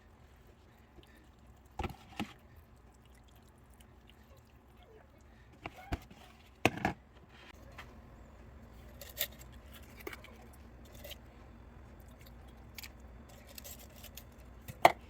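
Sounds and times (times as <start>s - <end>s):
faint steady background: 0.0s - 15.0s
objects knocking and clattering: 5.6s - 7.0s.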